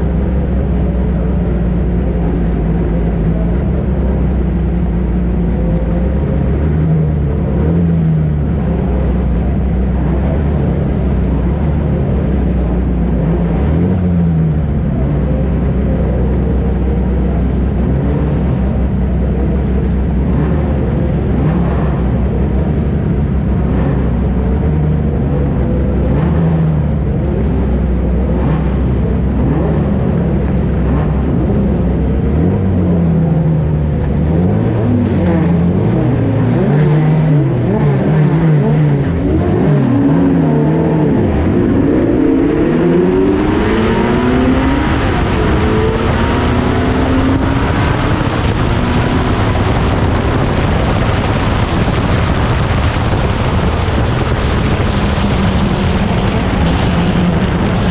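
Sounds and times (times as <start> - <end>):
racing car engines revving: 0.0 - 57.9.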